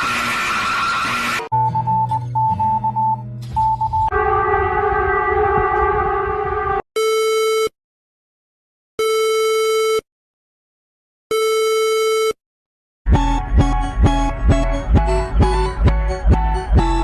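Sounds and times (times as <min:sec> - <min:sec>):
plucked guitar-like music: 0:13.1 - 0:17.0.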